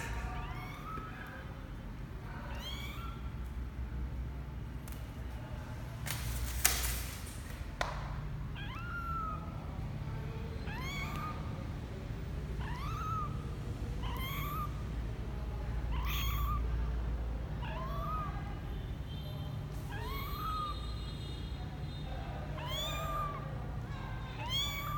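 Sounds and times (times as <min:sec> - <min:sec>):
kitten mewing: 0:00.0 - 0:01.6, 0:02.4 - 0:03.4, 0:08.5 - 0:09.7, 0:10.6 - 0:11.7, 0:12.6 - 0:15.0, 0:15.8 - 0:16.8, 0:17.6 - 0:18.5, 0:19.9 - 0:20.8, 0:22.5 - 0:23.6, 0:24.3 - 0:24.9.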